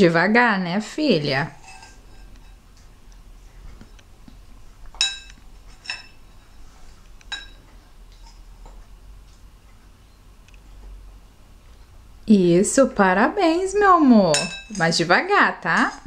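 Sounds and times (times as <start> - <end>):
spoon clinking against a dish: 1.5 - 2.6, 5.0 - 6.4, 7.3 - 7.7, 14.3 - 14.9.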